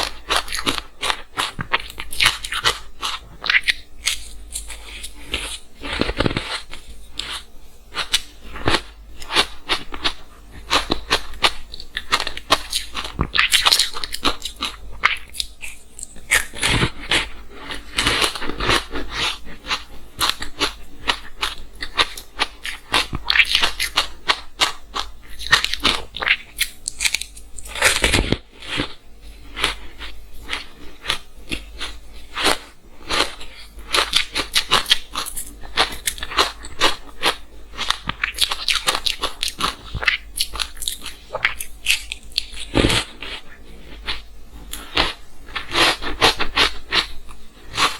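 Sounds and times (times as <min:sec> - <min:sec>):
ice being bitten and chewed: 0:00.0 - 0:47.9.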